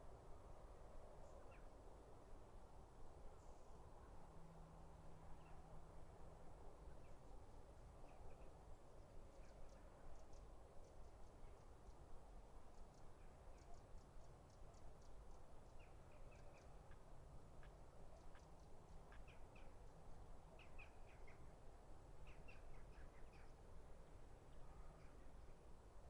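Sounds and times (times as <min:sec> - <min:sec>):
faint bird chirps: 0:12.7 - 0:17.0, 0:17.6 - 0:21.6, 0:22.2 - 0:23.7, 0:24.5 - 0:25.6.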